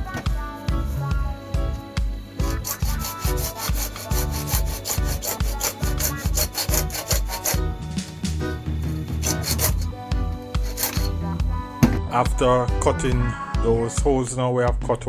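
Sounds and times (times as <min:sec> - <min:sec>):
pipe being cut with rasping strokes: 0:00.0 - 0:12.0
music with steady beat and bass: 0:00.0 - 0:15.0.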